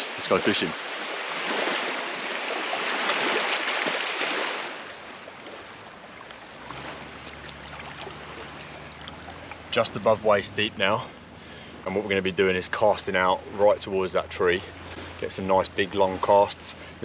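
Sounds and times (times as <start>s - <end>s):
water sloshing around wading legs: 0.7s - 10.4s
low steady rumble: 4.9s - 17.0s.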